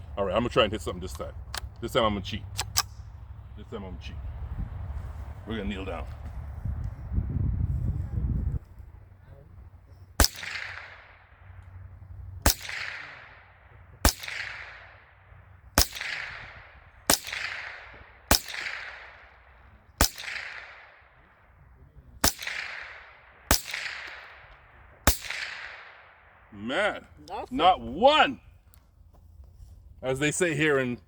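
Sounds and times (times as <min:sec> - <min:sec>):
rifle shots with echo: 0:10.1 - 0:26.9.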